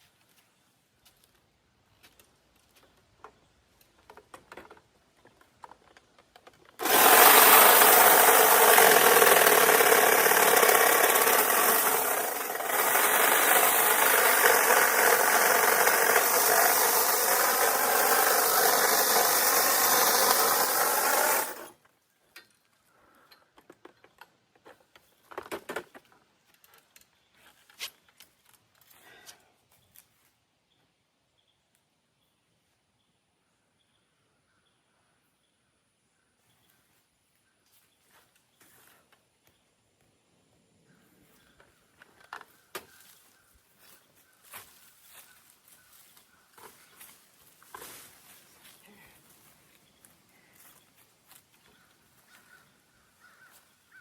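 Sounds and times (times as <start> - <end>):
faint clicks and rustles: 0.0 - 6.8, 21.7 - 30.4
small power tool running: 6.8 - 21.8.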